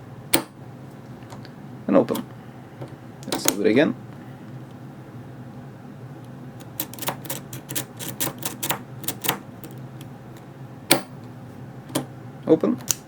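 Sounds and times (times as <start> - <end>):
lock pick clicking in padlock: 6.6 - 10.1.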